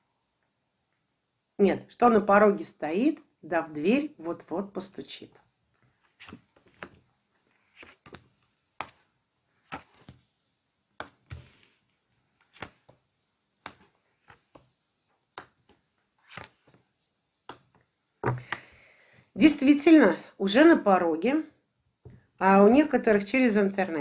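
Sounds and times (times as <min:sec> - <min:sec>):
cards tapping on a table: 0:17.5 - 0:18.6.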